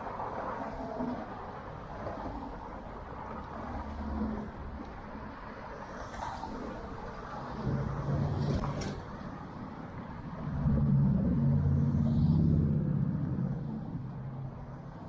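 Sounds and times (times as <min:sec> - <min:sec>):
street noise: 0:00.0 - 0:15.0.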